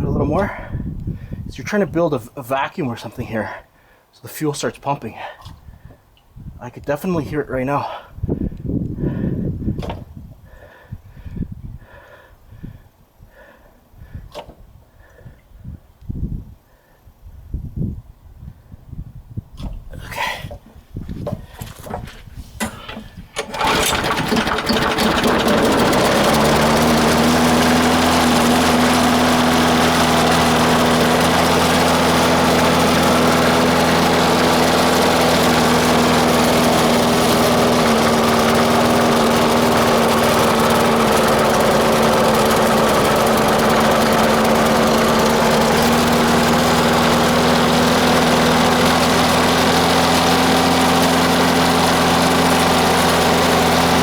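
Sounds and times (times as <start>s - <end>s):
lawnmower engine starting and running: 21.2s - 54.0s.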